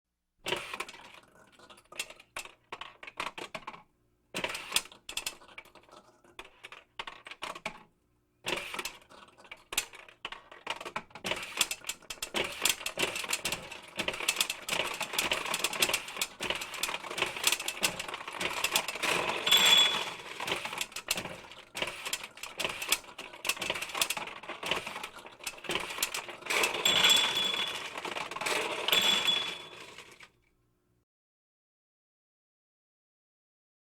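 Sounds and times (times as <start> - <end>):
steel balls clattering: 11.5 - 30.3.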